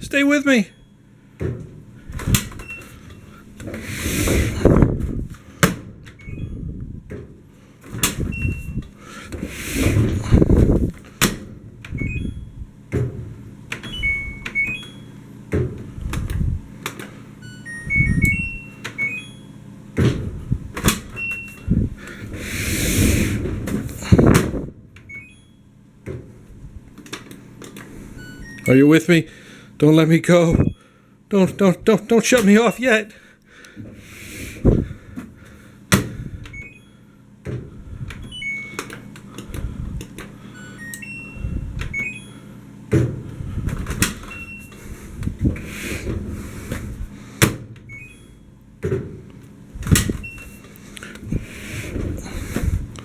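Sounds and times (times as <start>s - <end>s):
dryer drum rumbling: 1.0s - 29.7s, 30.5s - 53.0s
short electronic beeps: 17.4s - 19.6s, 30.5s - 30.9s.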